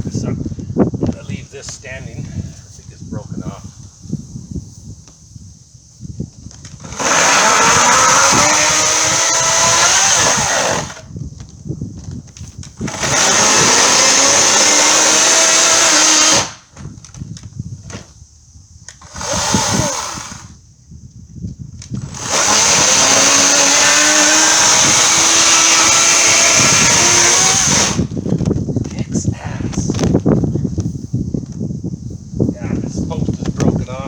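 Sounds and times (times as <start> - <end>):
electric chainsaw cutting wood: 6.6 - 11.1, 12.7 - 16.7, 18.9 - 20.6, 21.9 - 28.2
wood knocks and clatter: 16.7 - 18.2.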